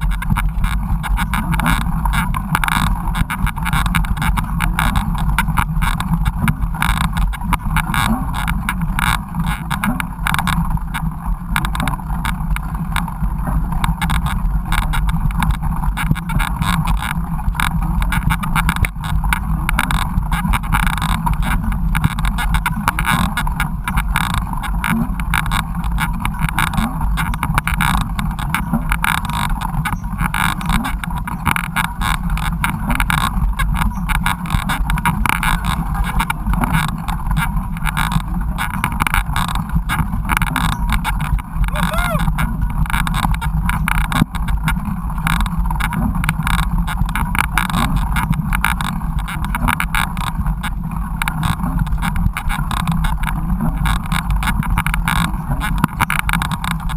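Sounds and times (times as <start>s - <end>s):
mountain bike rumbling and rattling: 0.0s - 56.9s.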